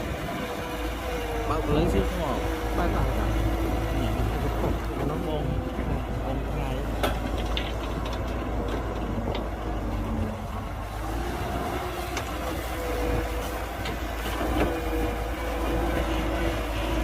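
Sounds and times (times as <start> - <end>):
diesel engine rumbling: 0.0 - 17.0
metallic knocks and clanks: 6.9 - 9.7.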